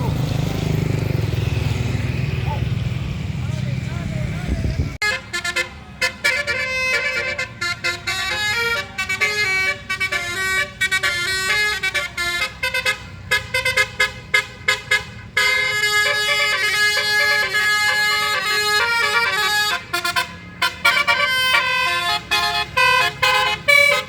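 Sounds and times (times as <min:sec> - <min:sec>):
low engine rumble: 0:00.0 - 0:24.0
musical bus horn melody: 0:05.0 - 0:24.0.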